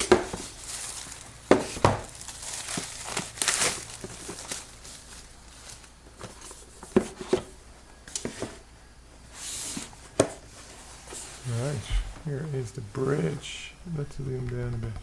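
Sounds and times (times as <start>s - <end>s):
packaging rustling: 0.0s - 8.7s.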